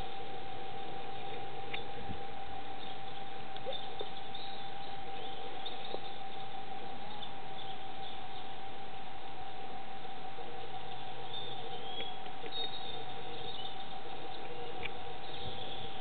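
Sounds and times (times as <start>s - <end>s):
steady machine whine: 0.0s - 16.0s
faint high chirps: 10.6s - 16.0s.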